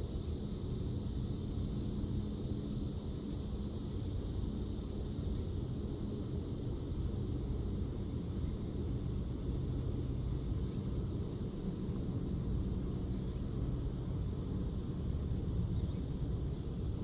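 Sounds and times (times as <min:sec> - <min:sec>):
low outdoor rumble: 0:11.4 - 0:17.0.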